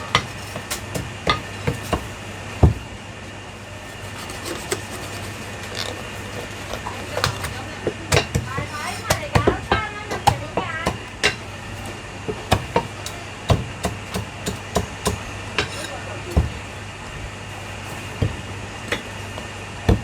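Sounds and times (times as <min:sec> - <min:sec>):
meat cleaver chopping on block: 0:00.0 - 0:02.8, 0:06.7 - 0:16.7.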